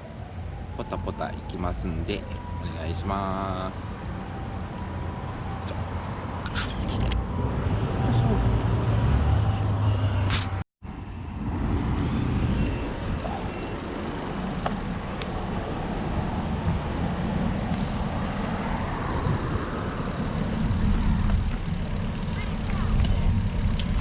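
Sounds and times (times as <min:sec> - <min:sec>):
road noise from moving bike: 0:00.0 - 0:24.0
wind rumble on microphone: 0:09.6 - 0:24.0.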